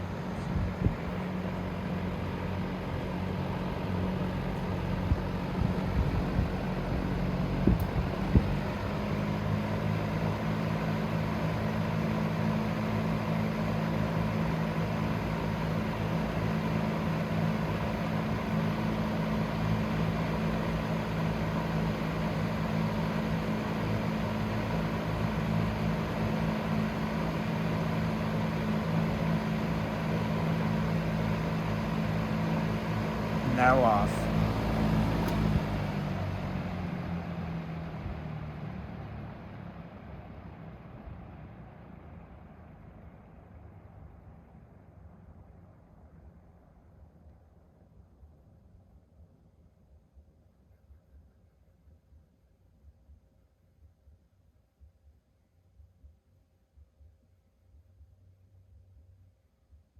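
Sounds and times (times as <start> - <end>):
box fan humming and rushing air: 0.0 - 47.3
fan switch clicks: 7.7 - 8.0, 35.2 - 35.8.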